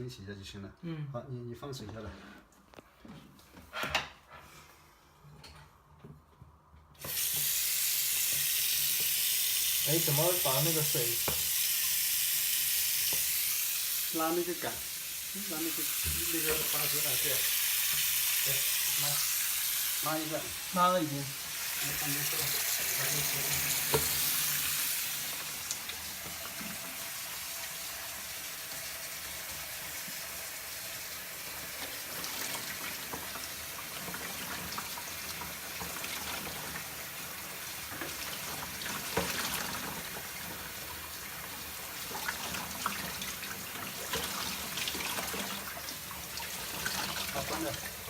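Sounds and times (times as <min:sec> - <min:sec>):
water running into washbasin: 0:07.0 - 0:48.0.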